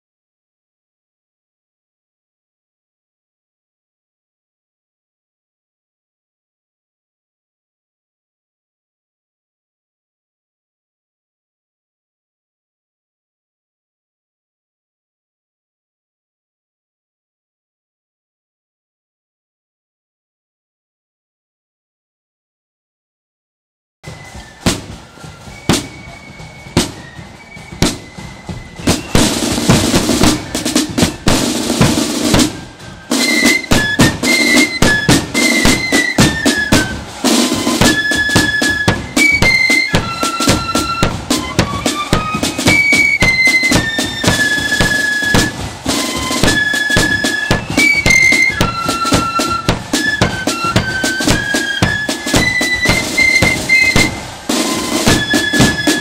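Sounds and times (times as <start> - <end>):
bass drum beats: 24.1 - 32.8
flutes playing a tune: 24.1 - 56.0
snare drum roll: 24.1 - 56.0.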